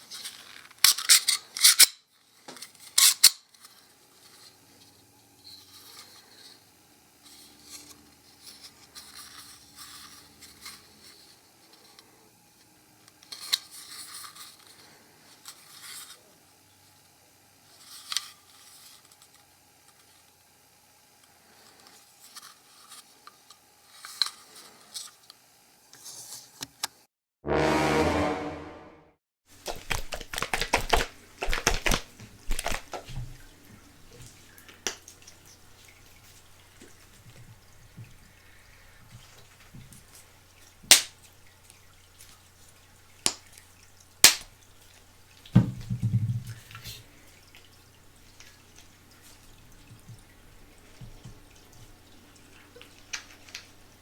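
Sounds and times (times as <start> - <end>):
loud pitched sound: 27.4 - 29.2
packaging crinkling and snipping: 29.6 - 33.2.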